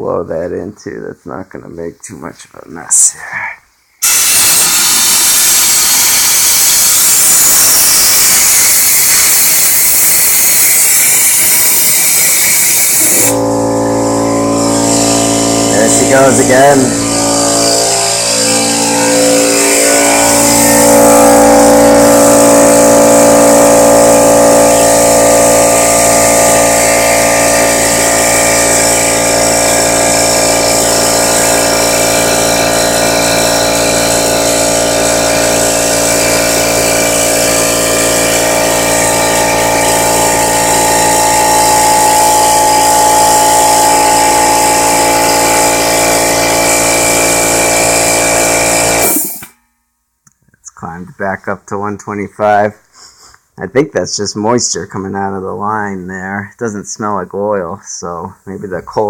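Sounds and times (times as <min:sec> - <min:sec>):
air compressor running: 0:04.0 - 0:49.6.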